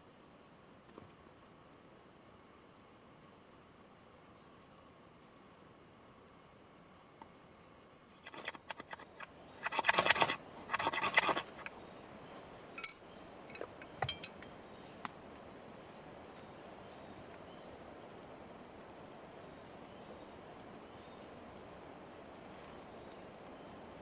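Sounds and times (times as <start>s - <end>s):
rapid scraping: 8.2s - 11.7s
sharp clicks and clinks: 8.2s - 11.7s, 12.8s - 14.6s.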